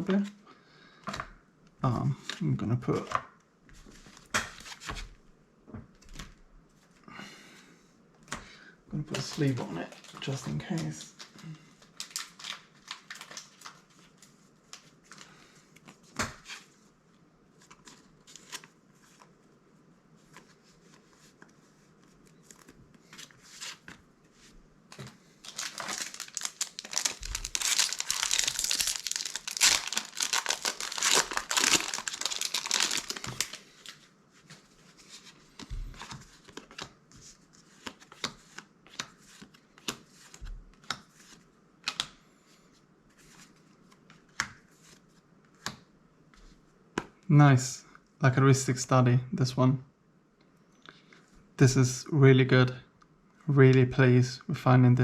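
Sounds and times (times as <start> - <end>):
foil wrapper crinkling and tearing: 11.9 - 13.8, 25.4 - 33.9.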